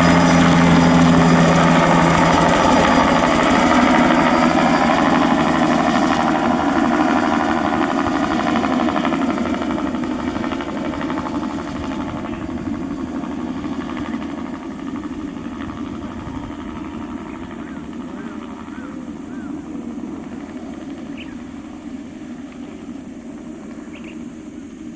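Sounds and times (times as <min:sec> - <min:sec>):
helicopter engine and rotor blades: 0:00.0 - 0:24.9.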